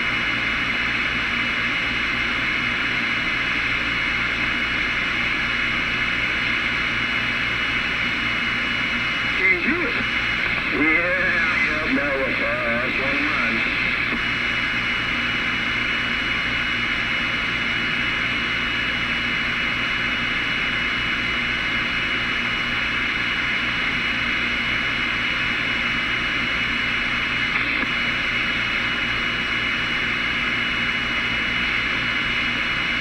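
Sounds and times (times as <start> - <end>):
radio static hiss: 0.0 - 33.0
faint high whine: 1.8 - 21.0
radio click: 9.3 - 14.4, 27.5 - 28.2.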